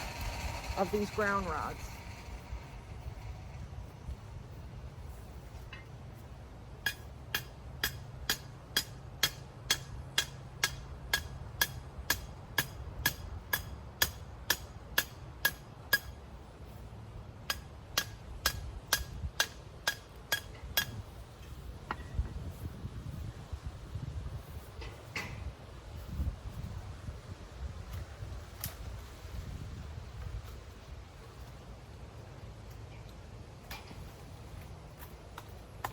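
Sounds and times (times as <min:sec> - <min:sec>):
hammer striking metal rod: 0:06.8 - 0:16.2, 0:17.4 - 0:21.0.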